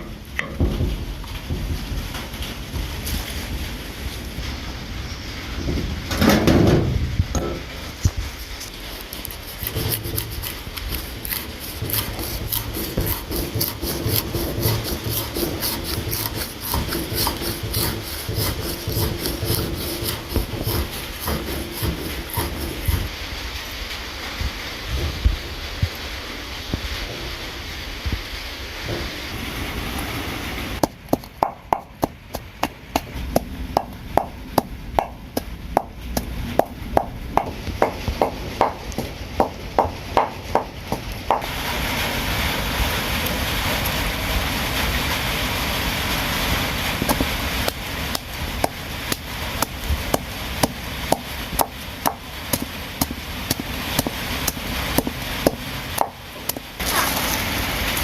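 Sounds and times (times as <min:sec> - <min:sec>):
steady hiss: 0:00.0 - 0:58.0
knife chopping on wooden board: 0:09.6 - 0:23.0, 0:30.8 - 0:41.4, 0:48.1 - 0:57.0.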